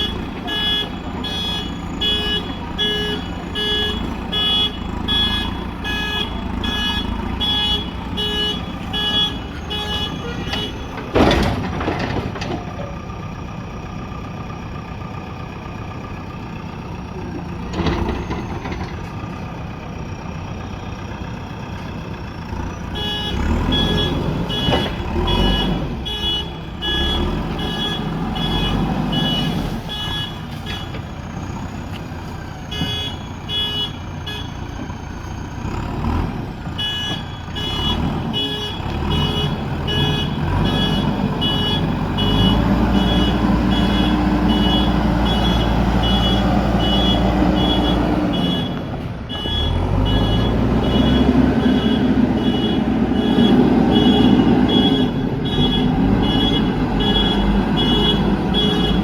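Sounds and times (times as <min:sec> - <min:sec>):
reversing alarm beeping: 0:00.0 - 0:11.6, 0:22.9 - 0:36.1, 0:36.8 - 0:59.0
diesel engine running: 0:00.0 - 0:59.0.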